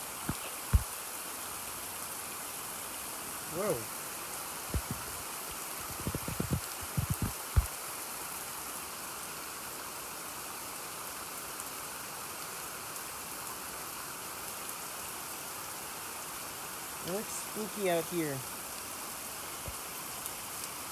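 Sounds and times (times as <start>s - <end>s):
rain falling: 0.0s - 20.9s
dull low thumps: 4.7s - 5.2s, 5.8s - 7.7s.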